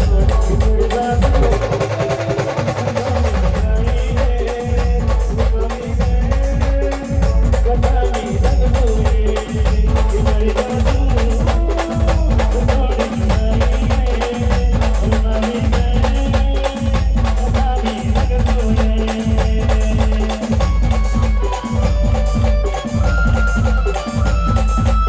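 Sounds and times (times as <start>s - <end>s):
folk dance music: 0.0s - 25.0s
loud percussion: 0.0s - 25.0s.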